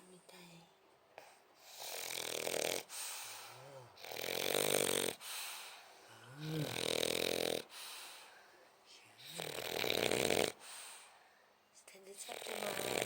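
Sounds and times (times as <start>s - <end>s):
dog snoring with whistle: 1.6s - 5.2s, 6.4s - 7.7s, 9.2s - 10.6s, 12.3s - 13.0s.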